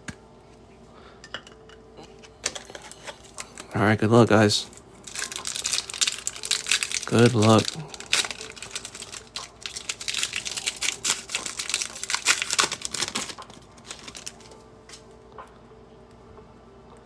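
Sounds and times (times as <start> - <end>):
card pack wrapper tearing: 4.6 - 14.5
cards being handled: 4.7 - 15.1.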